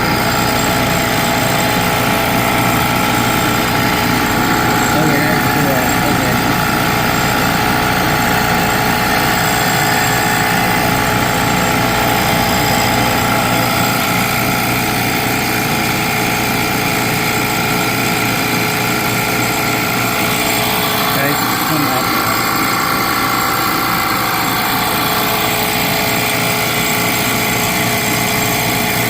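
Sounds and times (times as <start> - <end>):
compressor machine running: 0.0 - 29.0.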